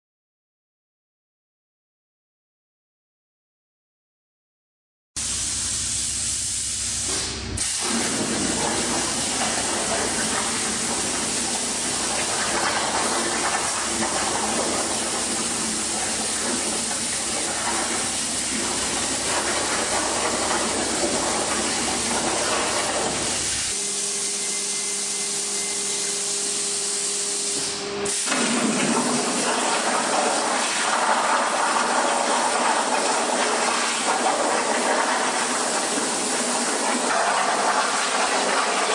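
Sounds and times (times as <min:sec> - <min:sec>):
plasma torch hissing: 0:05.2 - 0:31.4.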